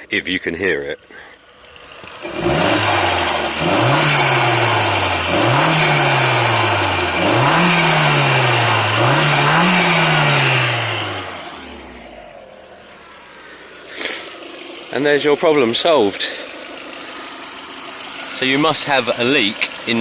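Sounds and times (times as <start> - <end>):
turbocharged engine revving: 1.5 - 20.0.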